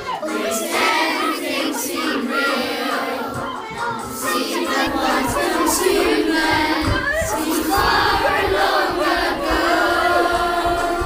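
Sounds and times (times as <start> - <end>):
crowd of voices: 0.0 - 11.0.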